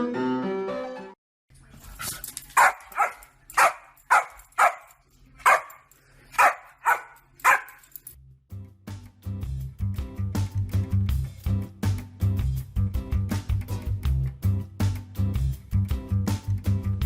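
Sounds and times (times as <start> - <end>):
music: 0.0 - 1.2, 8.1 - 17.0
dog barking: 2.6 - 7.9.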